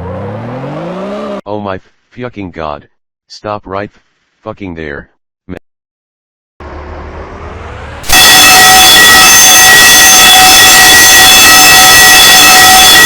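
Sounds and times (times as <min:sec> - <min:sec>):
distorted fire alarm horn: 0:08.1 - 0:13.0.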